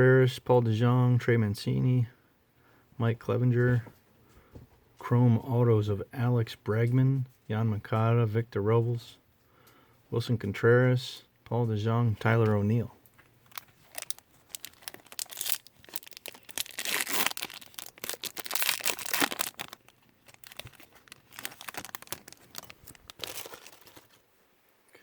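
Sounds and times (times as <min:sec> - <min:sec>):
wrapping crackling and tearing: 0:13.4 - 0:24.2.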